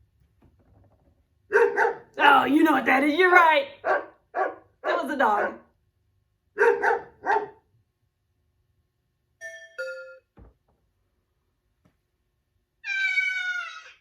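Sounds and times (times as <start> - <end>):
dog barking: 1.5 - 2.2, 3.8 - 5.7, 6.6 - 7.7
two-note doorbell chime: 9.4 - 10.3.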